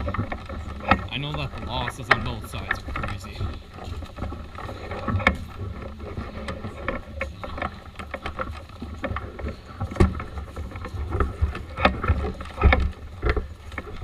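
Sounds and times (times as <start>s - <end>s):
rustles and clicks: 0.0s - 14.0s
wind rumbling on microphone: 0.0s - 14.0s.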